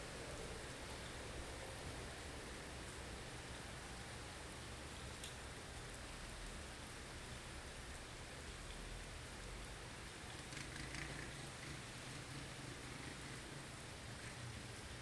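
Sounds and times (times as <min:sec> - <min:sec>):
faint tick: 0:05.2 - 0:06.6.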